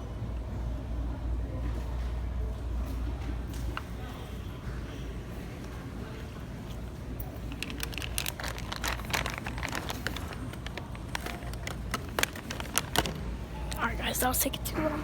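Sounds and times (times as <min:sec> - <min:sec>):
rustling and crinkling: 0:07.2 - 0:13.8.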